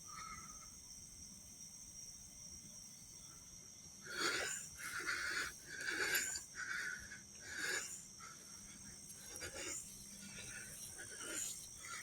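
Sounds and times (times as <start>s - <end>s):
person breathing heavily: 4.1s - 12.0s.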